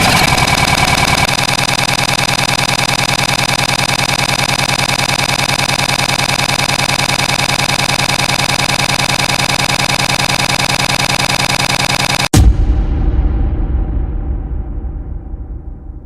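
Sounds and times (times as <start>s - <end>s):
engine-like drone with fast pulse: 0.0s - 12.3s.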